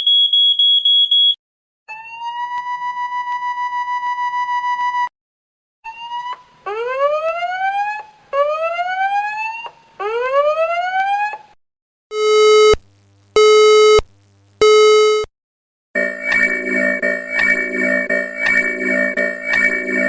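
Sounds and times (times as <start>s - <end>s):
buzzing alarm beeps: 0.0s - 1.4s, 12.2s - 12.8s, 13.4s - 14.0s, 14.6s - 15.3s, 16.0s - 20.0s
rising whoop alarm tones: 1.9s - 4.4s, 5.9s - 11.5s.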